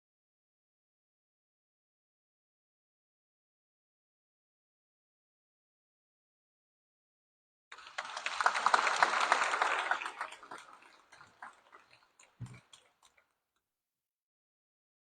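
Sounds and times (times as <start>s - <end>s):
audience applauding: 7.7s - 13.2s.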